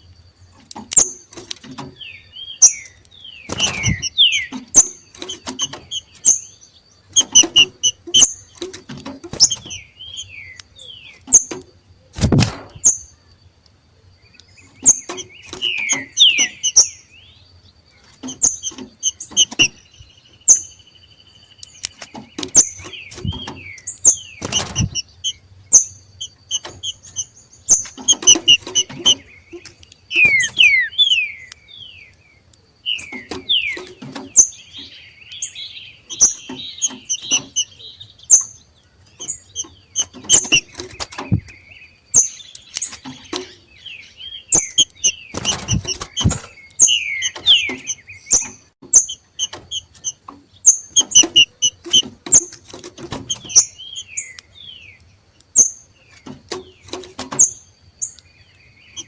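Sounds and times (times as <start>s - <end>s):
bird calls and whistles: 0.5s - 13.4s, 14.3s - 59.0s
loud thumps: 3.5s - 6.3s, 12.2s - 12.9s, 24.4s - 25.3s, 30.1s - 30.9s, 44.6s - 46.6s
clicks: 26.2s - 34.4s.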